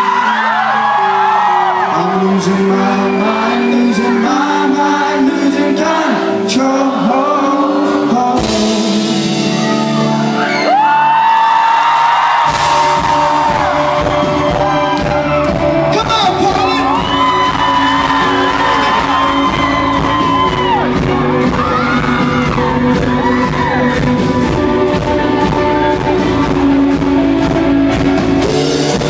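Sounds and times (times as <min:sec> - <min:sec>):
rock band playing live: 0:00.0 - 0:29.0
man singing long notes: 0:01.6 - 0:10.1.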